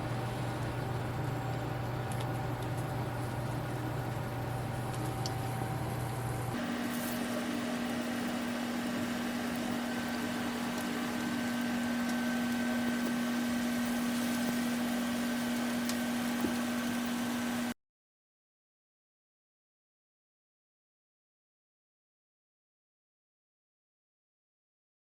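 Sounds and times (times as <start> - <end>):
electric appliance hum with hiss: 0.0 - 17.8.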